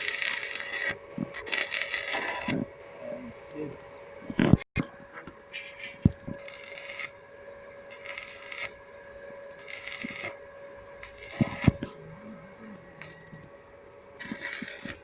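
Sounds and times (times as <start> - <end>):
welding arc crackling: 0.0 - 2.6, 5.7 - 7.2, 7.9 - 8.8, 9.6 - 12.0, 14.2 - 15.0
steady hum: 0.0 - 15.0.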